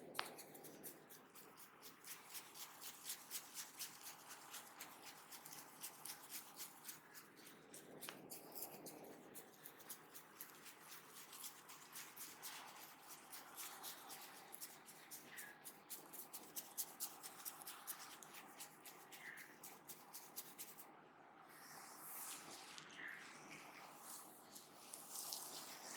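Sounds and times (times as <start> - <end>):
hands tapping and rubbing hair: 0.1 - 1.0, 9.7 - 20.8.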